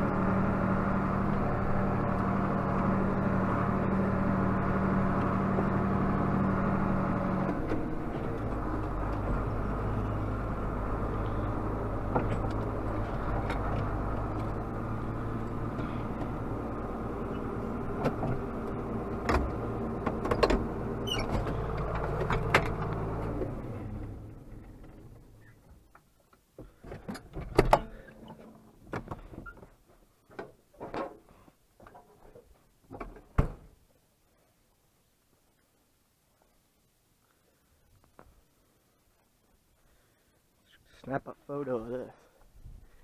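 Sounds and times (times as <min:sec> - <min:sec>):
tractor diesel engine running: 0:00.0 - 0:26.0, 0:26.6 - 0:29.6
sharp clicks and knocks: 0:19.2 - 0:23.6.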